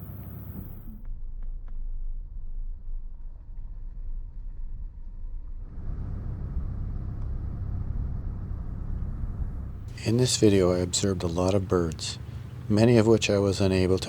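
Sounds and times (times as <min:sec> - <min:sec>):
car driving rumble: 0:05.6 - 0:14.0.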